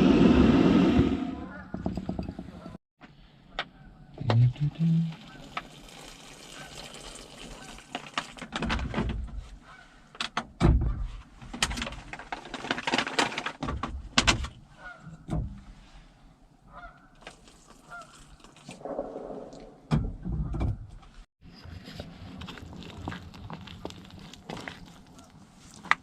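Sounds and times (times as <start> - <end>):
food pouch rustling: 11.8 - 13.6.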